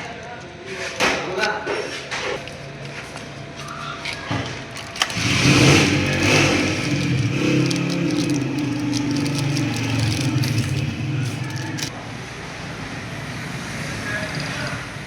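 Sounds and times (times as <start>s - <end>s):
motorcycle engine starting and running: 4.8s - 11.9s.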